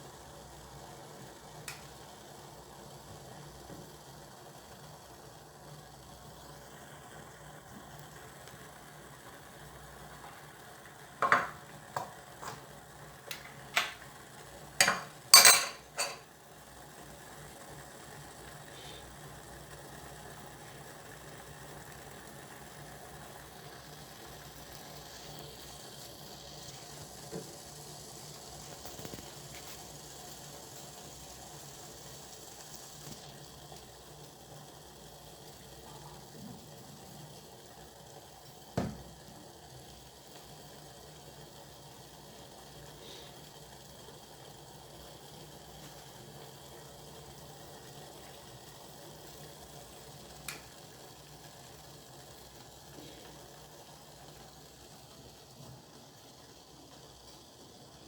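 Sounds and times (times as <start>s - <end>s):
kitchen utensils clinking: 13.4s - 14.0s, 14.8s - 16.3s.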